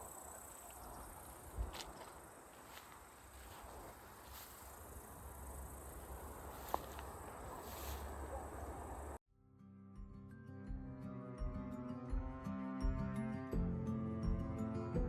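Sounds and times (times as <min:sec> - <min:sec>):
crickets chirring: 0:00.0 - 0:09.2
soft music: 0:09.4 - 0:15.0.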